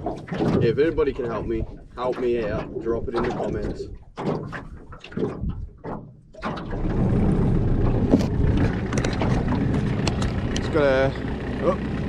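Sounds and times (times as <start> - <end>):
outboard motor running: 0.0 - 12.0.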